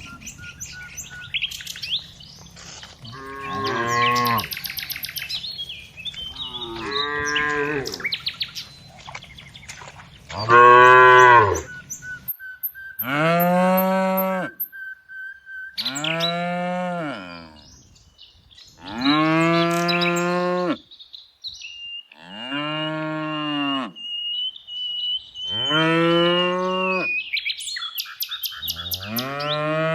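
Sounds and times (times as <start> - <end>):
cattle mooing: 3.0 - 4.6, 6.3 - 8.1, 10.3 - 11.7, 28.7 - 29.9.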